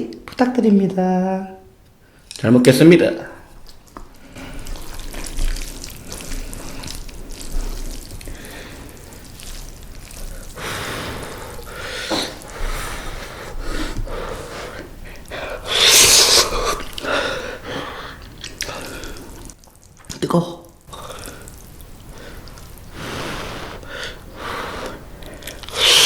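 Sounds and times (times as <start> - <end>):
person slurping and chewing noodles: 3.5 - 20.0, 20.9 - 26.0.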